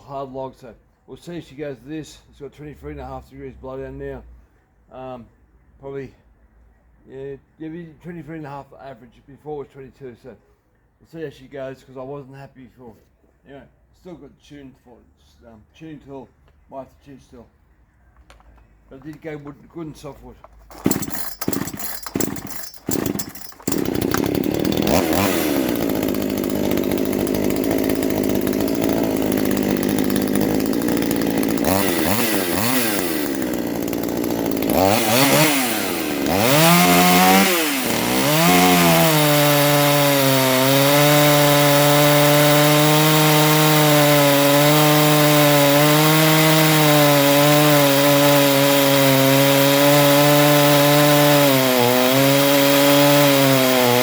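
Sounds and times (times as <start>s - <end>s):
chainsaw sawing through log: 20.5s - 54.0s.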